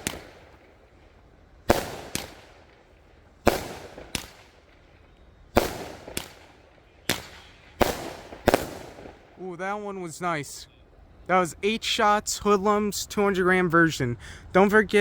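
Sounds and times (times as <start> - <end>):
firework bangs: 0.0 - 9.4.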